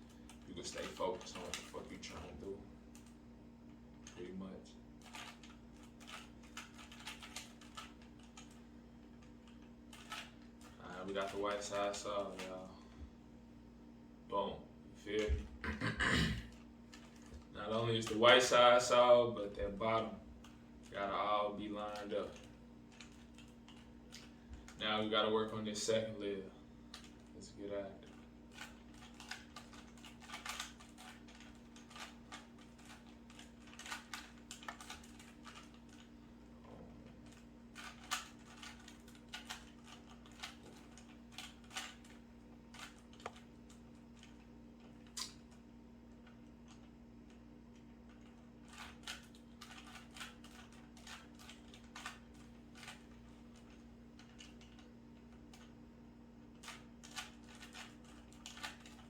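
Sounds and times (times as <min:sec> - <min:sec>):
steady low hum: 0:00.0 - 0:59.0
puzzle cube clicking: 0:28.1 - 0:36.0, 0:48.7 - 0:52.2.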